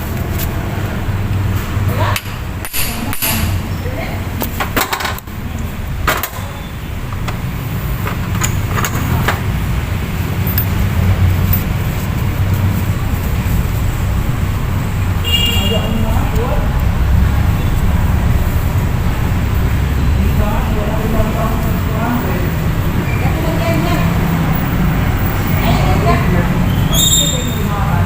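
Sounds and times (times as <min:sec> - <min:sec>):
steady low hum: 0:06.7 - 0:25.3.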